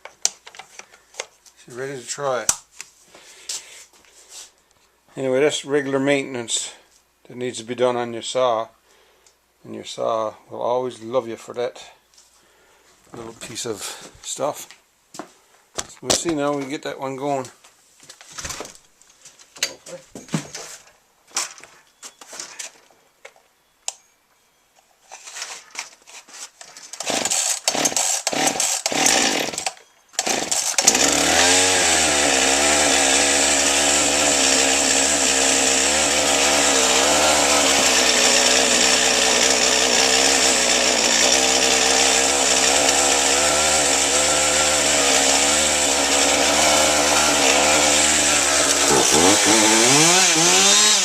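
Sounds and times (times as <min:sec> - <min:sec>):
chainsaw cranking pulls: 0:26.9 - 0:51.0
chainsaw engine idling: 0:27.1 - 0:29.6, 0:30.2 - 0:51.0.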